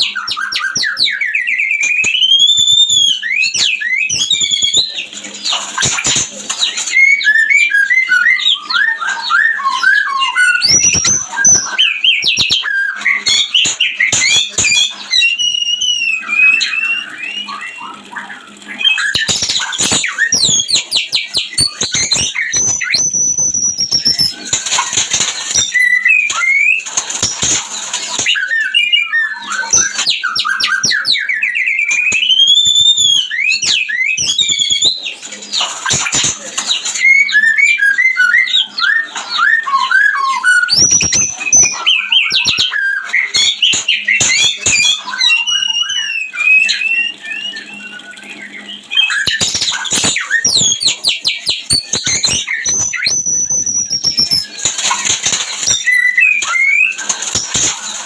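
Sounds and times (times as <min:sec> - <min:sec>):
bird singing varied song: 0:28.2 - 0:35.7, 0:36.4 - 0:57.6.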